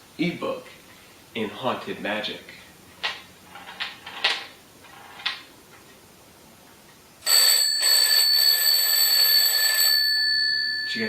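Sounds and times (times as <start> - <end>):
bell alarm clock ringing: 7.3 - 11.0.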